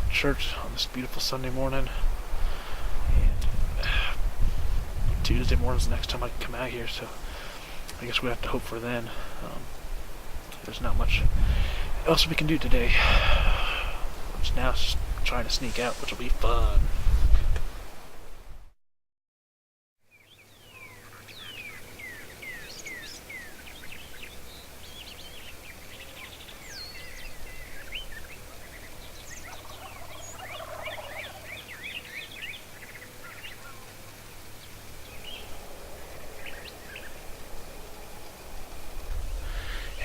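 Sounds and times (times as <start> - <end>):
songbirds chirping: 0.0 - 17.0, 20.0 - 40.0
turkeys gobbling: 29.4 - 31.6.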